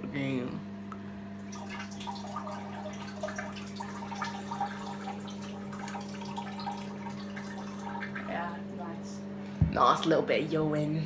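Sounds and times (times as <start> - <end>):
steady low hum: 0.0 - 11.0
person urinating into toilet: 1.4 - 8.4.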